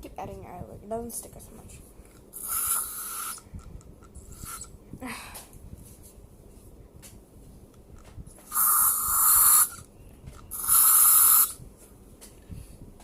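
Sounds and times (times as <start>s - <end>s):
aerosol spray hissing: 2.4s - 3.4s, 8.5s - 9.8s, 10.5s - 11.6s.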